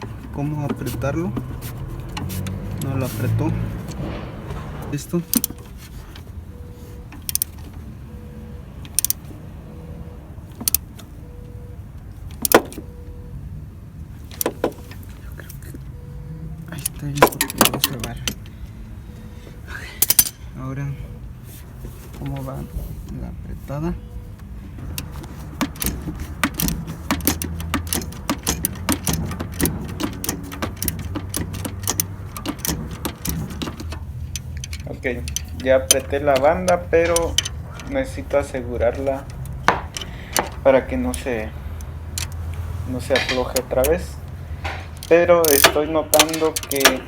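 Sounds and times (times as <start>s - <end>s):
metal tools clinking: 4.9s - 6.2s, 16.7s - 18.5s, 19.9s - 20.6s, 24.8s - 47.0s
ratchet wrench clicking: 7.2s - 7.6s, 8.9s - 9.2s, 10.6s - 10.9s, 20.0s - 20.4s, 24.9s - 47.0s.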